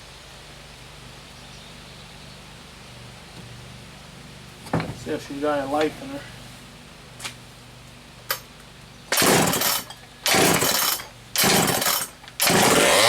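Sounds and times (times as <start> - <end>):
chainsaw engine running: 9.1 - 13.0
chainsaw pull-start bursts: 9.1 - 13.0.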